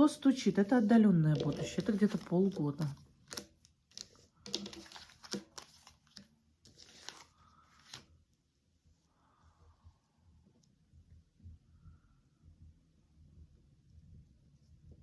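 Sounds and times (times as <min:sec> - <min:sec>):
cards rustling and tapping: 0:00.7 - 0:08.2.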